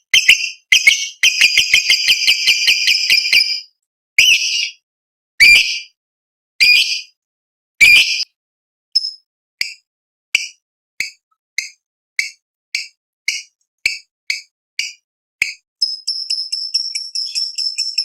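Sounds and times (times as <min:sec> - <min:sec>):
lovebird shrill call: 0:00.2 - 0:04.8, 0:05.4 - 0:05.9, 0:06.6 - 0:07.1, 0:07.8 - 0:08.3, 0:15.8 - 0:18.0
lovebird short sharp chirps: 0:07.8 - 0:08.3.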